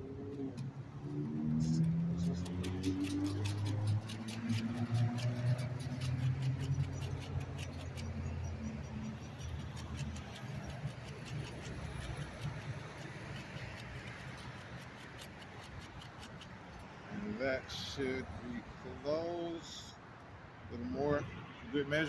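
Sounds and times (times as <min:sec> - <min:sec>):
root scraping on a hand grater: 0:01.6 - 0:16.9.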